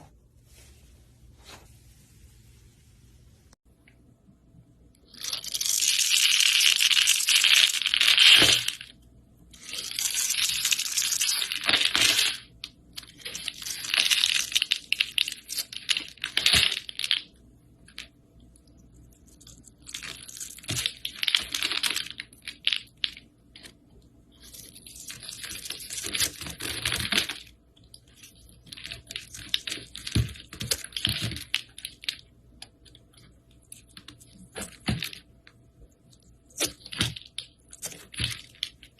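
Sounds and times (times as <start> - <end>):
slime crackling and popping: 9.6 - 17.4, 24.4 - 35.3.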